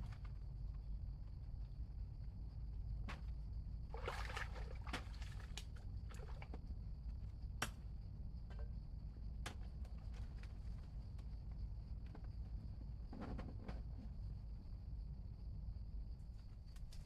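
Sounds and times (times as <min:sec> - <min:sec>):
water splashing and sloshing: 0:03.1 - 0:06.6.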